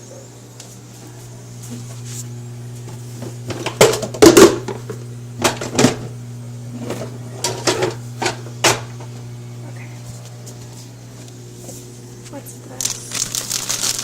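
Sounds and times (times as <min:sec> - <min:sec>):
refrigerator low hum: 0:00.0 - 0:14.0
containers knocking and rattling: 0:03.2 - 0:06.1.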